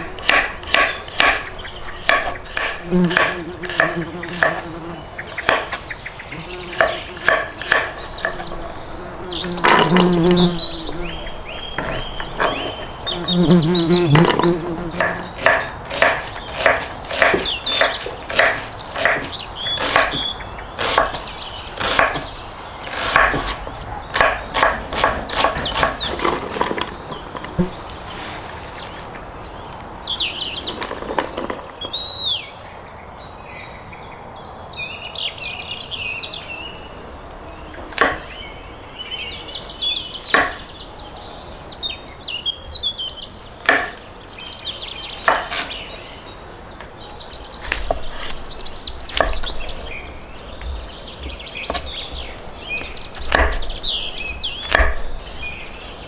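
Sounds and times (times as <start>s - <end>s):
chopping on wood: 0.0s - 5.9s, 6.7s - 8.5s, 14.2s - 27.8s, 37.9s - 38.3s, 40.3s - 40.6s, 43.6s - 44.0s, 45.2s - 45.8s, 47.6s - 49.8s, 52.8s - 53.8s, 54.6s - 55.2s
birds singing and chirping: 0.0s - 56.0s.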